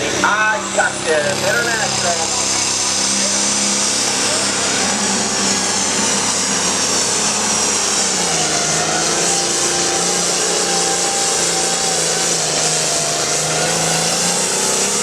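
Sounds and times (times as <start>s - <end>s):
tractor engine at full throttle: 0.0s - 15.0s.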